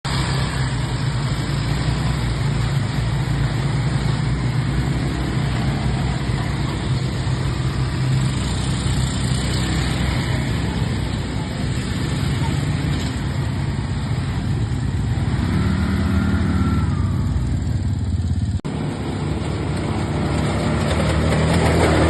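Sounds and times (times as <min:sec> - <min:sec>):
atv engine running: 0:00.0 - 0:22.0.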